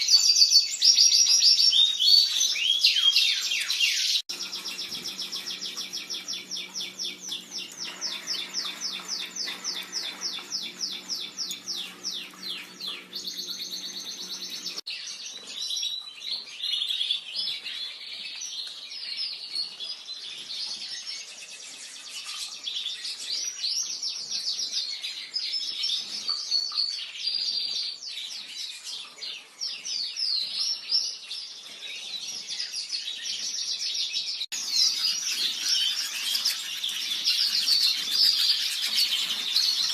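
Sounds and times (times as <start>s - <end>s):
pet birds chirping: 0.0s - 16.2s, 29.7s - 39.9s
low steady hum: 4.3s - 14.8s.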